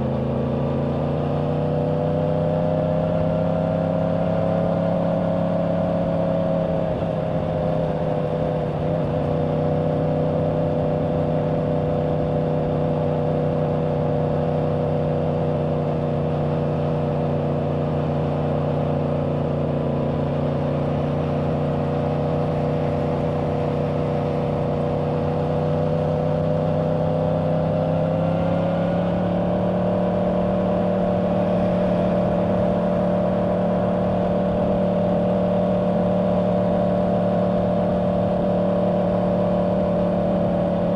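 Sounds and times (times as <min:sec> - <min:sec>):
motorcycle engine cruising: 0:00.0 - 0:40.9.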